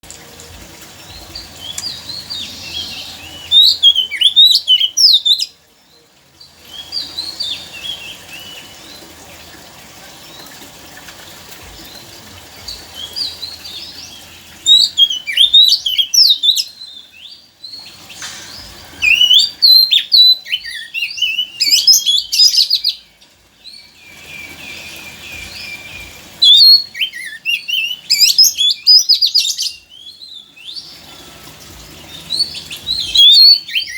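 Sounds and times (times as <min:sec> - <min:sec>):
faint steady hiss: 0:00.0 - 0:33.9
songbird whistling and chattering: 0:01.2 - 0:05.5, 0:17.8 - 0:23.0, 0:32.1 - 0:33.9.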